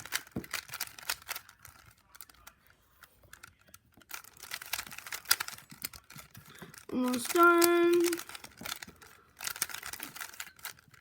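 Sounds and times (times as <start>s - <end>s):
puzzle cube layers clicking: 0.0s - 2.5s, 3.3s - 11.0s.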